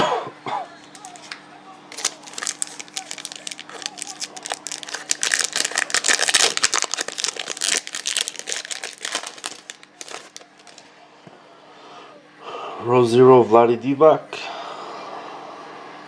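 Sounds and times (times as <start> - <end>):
foil wrapper crinkling: 0.8 - 10.9.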